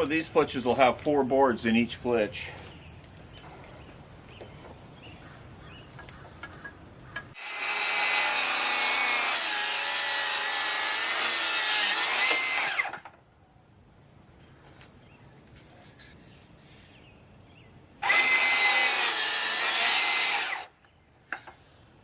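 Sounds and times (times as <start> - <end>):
bandsaw blade cutting wood: 7.3 - 13.1, 18.0 - 20.7.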